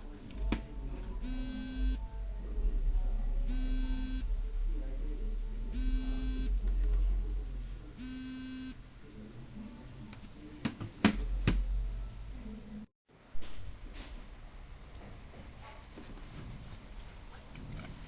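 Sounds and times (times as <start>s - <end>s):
low hum: 0.0s - 8.0s
short buzzes: 1.2s - 2.0s, 3.5s - 4.3s, 5.7s - 6.5s, 8.0s - 8.8s.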